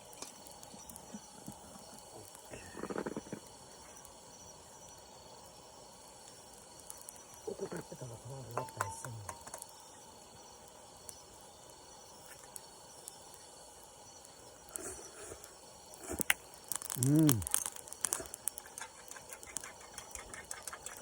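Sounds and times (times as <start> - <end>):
person humming: 17.0 - 17.5.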